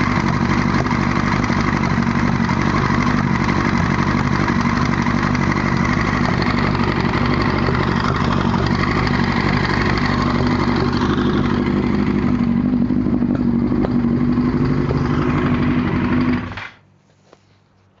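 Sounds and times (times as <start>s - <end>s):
knocking in engine: 0.0s - 16.7s
motorcycle engine running: 0.0s - 16.8s.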